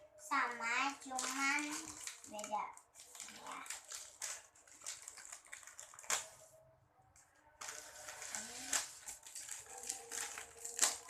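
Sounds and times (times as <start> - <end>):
packaging rustling and crinkling: 1.0 - 6.5, 7.6 - 11.0.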